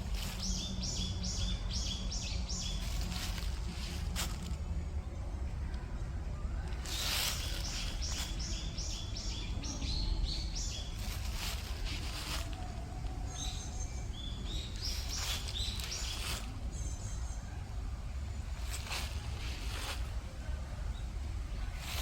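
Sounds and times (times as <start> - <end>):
rustling swishes: 0.0 - 1.5, 2.6 - 4.8, 6.6 - 16.8, 18.4 - 20.5, 21.5 - 22.0
low rumble: 0.0 - 22.0.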